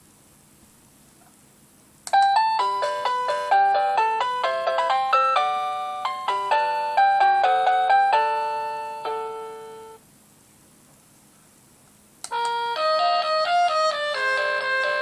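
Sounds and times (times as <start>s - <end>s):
electronic door chime tune: 2.2s - 10.0s.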